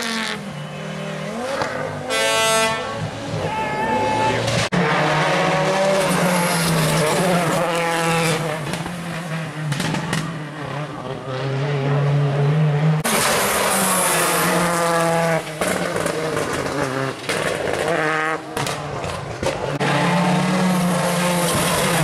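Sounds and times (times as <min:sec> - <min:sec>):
rally car engines revving: 0:00.0 - 0:22.0.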